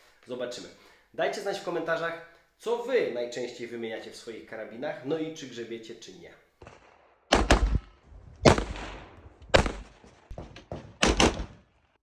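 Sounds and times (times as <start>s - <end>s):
rifle shots: 6.6s - 10.1s, 11.0s - 11.6s.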